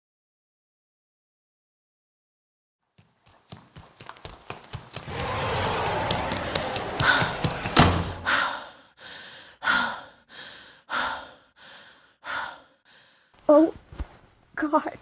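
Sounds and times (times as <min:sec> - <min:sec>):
heavy thud: 0:05.1 - 0:08.4.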